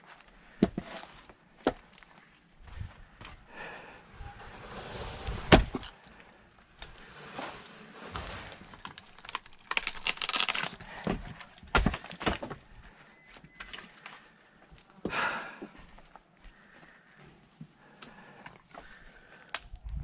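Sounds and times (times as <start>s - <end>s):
wood crackling and splintering: 3.6s - 12.6s.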